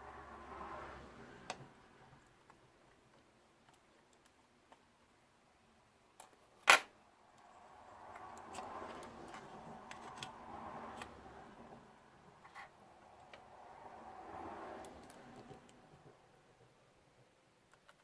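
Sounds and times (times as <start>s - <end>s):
small parts clicking and tapping: 17.7s - 18.0s.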